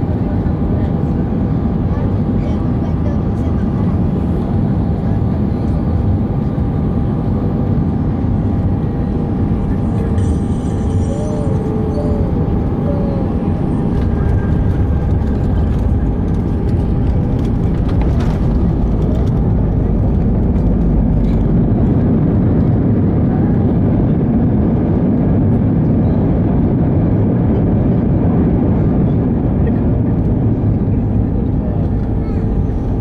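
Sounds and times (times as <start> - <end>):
jet cabin low rumble: 0.0 - 33.0
rattles and knocks: 13.9 - 21.7.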